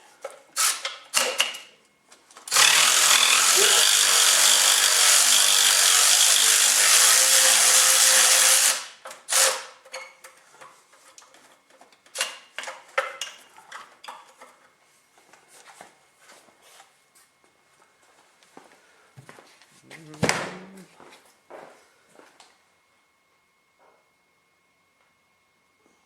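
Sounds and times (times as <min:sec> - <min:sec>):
cordless power wrench running: 0:02.5 - 0:09.7.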